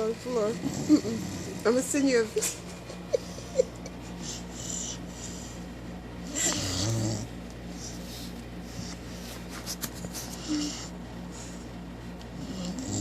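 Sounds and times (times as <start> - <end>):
puppy snoring: 0.0 - 2.1, 6.2 - 7.9, 10.2 - 11.0, 12.3 - 13.0.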